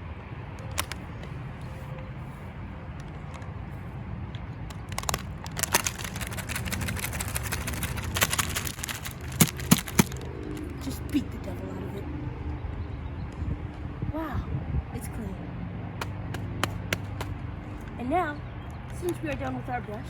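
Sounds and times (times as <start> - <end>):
paintbrush scrubbing and rustling: 5.1 - 10.2.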